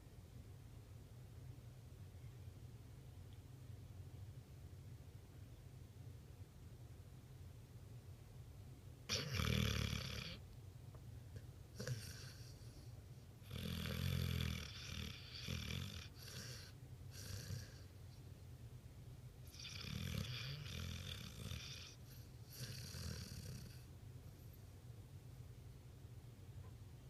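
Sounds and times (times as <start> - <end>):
dog snoring: 9.1 - 10.4, 11.8 - 17.9, 19.5 - 24.5.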